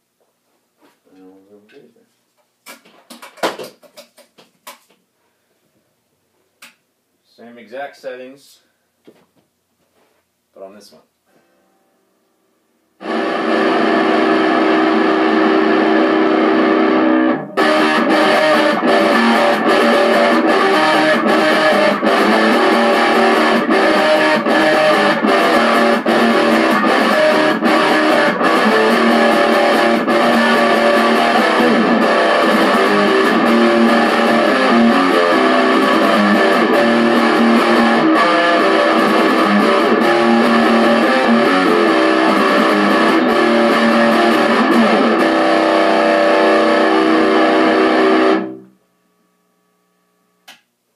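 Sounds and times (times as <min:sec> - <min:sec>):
distorted electric guitar: 0:13.0 - 0:48.8.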